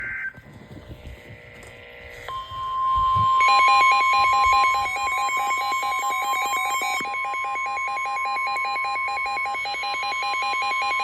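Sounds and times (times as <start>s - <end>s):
steady attention tone: 1.8s - 11.0s
rapid electronic alarm beeps: 2.3s - 11.0s.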